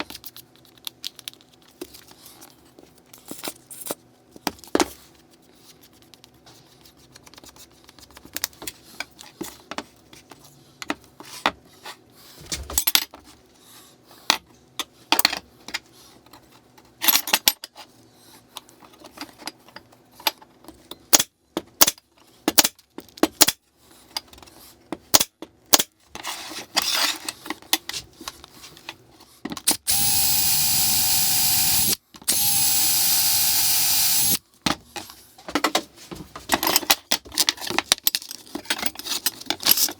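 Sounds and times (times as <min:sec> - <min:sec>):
electric drill drilling steel: 0:29.7 - 0:34.4.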